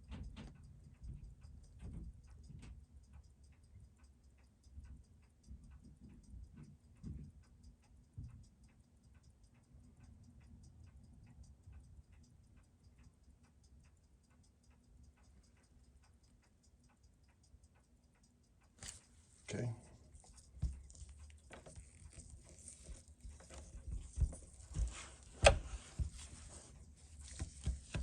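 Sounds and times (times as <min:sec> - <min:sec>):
fast watch ticking: 0:00.0 - 0:28.0
soft handling bumps: 0:20.0 - 0:28.0.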